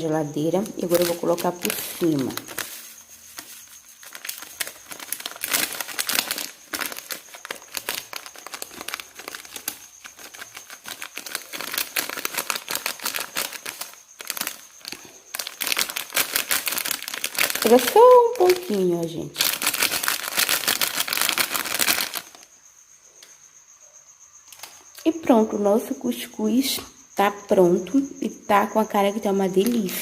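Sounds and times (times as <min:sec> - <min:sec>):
plastic packet crinkling: 0:00.4 - 0:18.8, 0:19.4 - 0:22.5.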